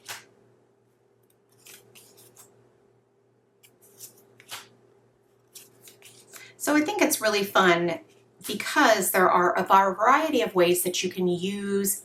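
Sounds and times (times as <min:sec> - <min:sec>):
faint steady hum: 0:00.0 - 0:12.0
cards rustling and sliding: 0:01.4 - 0:02.6, 0:03.6 - 0:06.4.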